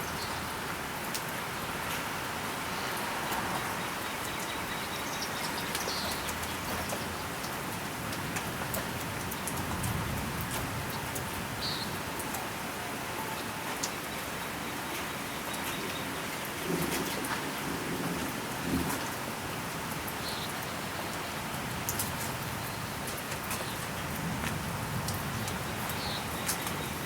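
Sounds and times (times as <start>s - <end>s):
steady rain falling: 0.0s - 27.0s
faint raindrop ticks: 1.0s - 2.2s, 2.9s - 12.5s, 13.3s - 14.3s, 14.9s - 27.0s
low rumble of thunder: 9.6s - 12.0s.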